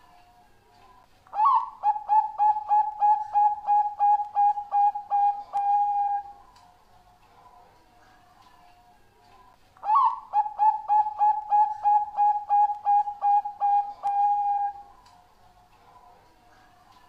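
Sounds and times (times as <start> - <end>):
faint background cooing: 0.0 - 17.0
dove cooing song: 1.3 - 6.6, 9.8 - 15.0.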